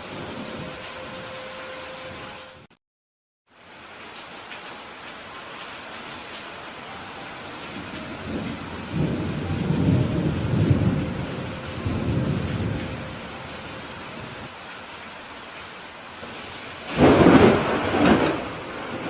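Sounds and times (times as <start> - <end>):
steady rain hissing: 0.0 - 2.7, 3.5 - 19.0
thunder rolling: 8.1 - 14.5, 16.2 - 19.0.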